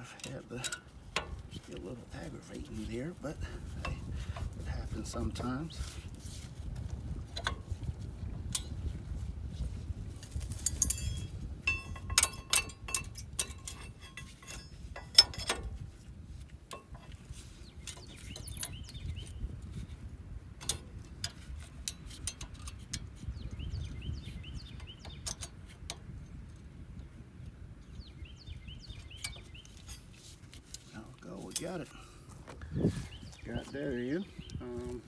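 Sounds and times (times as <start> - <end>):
birds chirping faintly: 16.9 - 20.0, 23.2 - 35.0.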